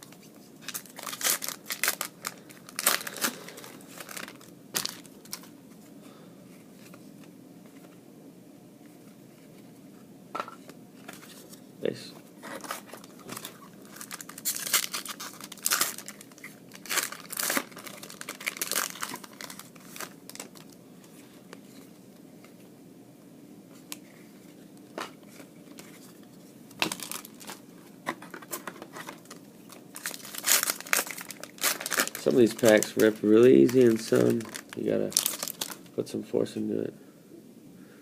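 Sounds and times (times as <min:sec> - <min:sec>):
foil wrappers crinkling and tearing: 0:00.6 - 0:05.5, 0:12.4 - 0:20.8, 0:26.8 - 0:27.6, 0:28.3 - 0:35.9.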